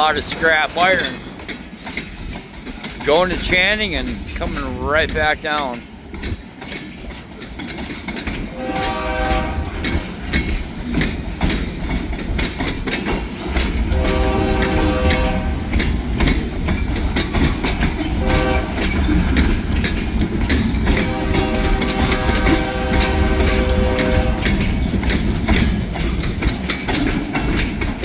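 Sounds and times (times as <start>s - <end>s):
railcars clanking: 0.0s - 28.0s
train horn blasts: 8.5s - 10.0s, 13.9s - 15.8s, 18.2s - 19.1s, 20.9s - 24.7s.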